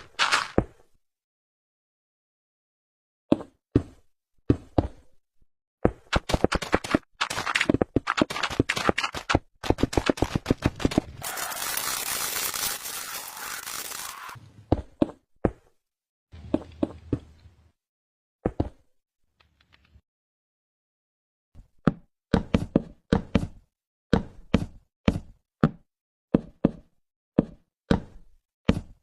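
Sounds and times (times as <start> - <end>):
hissing noise: 11.2 - 14.4.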